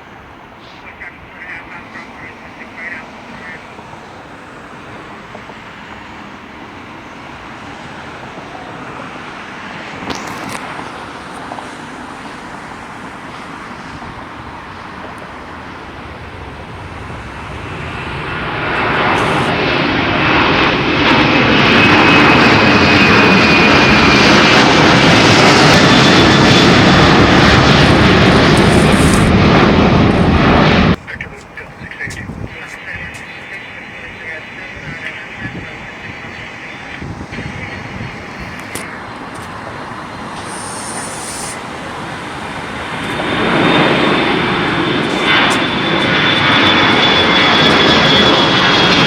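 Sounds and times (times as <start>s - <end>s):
jet engines rushing: 0.0s - 49.0s
thin falling whine: 23.3s - 35.4s, 36.2s - 49.0s.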